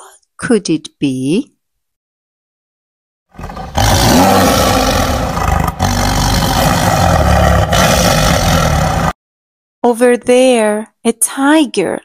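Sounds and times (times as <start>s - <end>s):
tiger roaring: 3.3s - 9.2s.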